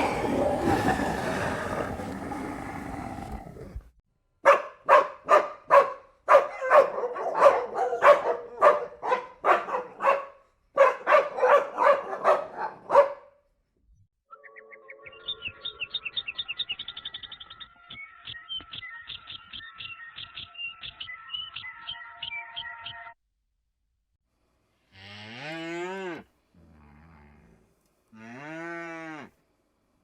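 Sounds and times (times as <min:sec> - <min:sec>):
rough animal roar: 0:00.0 - 0:03.9
dog barking: 0:04.4 - 0:13.4.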